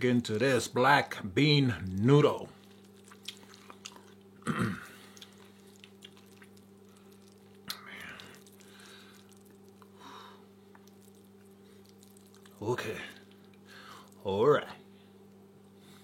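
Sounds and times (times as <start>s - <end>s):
low electrical hum: 0.0s - 16.0s
wet chewing: 1.8s - 14.2s
utensil and mouth clicks: 5.0s - 9.9s, 10.7s - 12.6s.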